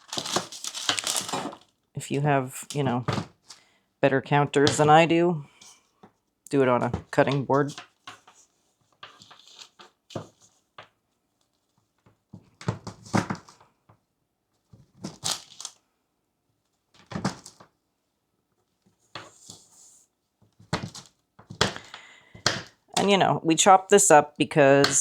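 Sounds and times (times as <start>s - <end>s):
knife chopping chocolate: 21.6s - 23.1s.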